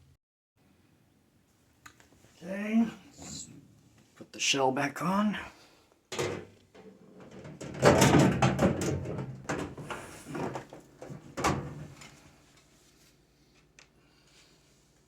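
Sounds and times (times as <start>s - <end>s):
microwave shell clattering and scraping: 6.1s - 12.2s.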